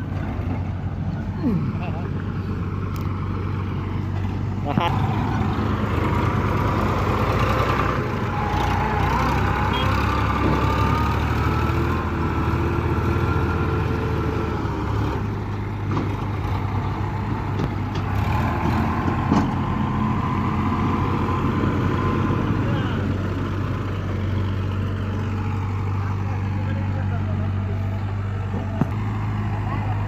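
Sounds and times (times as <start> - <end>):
tractor diesel engine running: 0.0 - 30.0.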